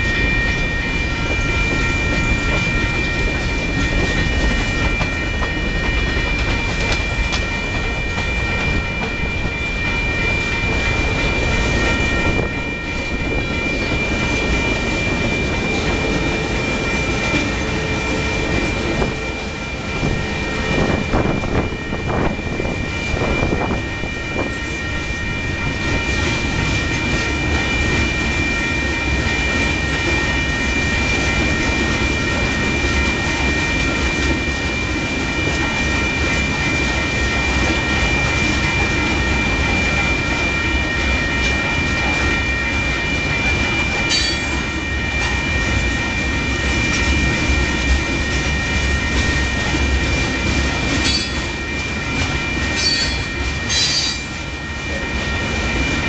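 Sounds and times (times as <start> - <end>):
high-pitched ringing tone: 0.0 - 56.0
train wheels clattering on rails: 0.0 - 56.0.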